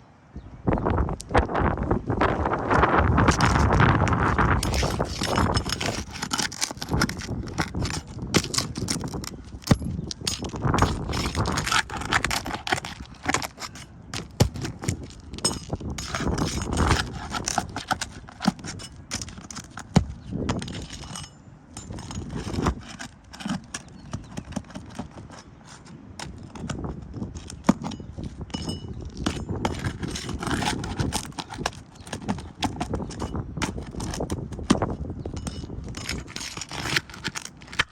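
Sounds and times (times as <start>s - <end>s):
roof shingle clicking and scraping: 2.3s - 37.9s.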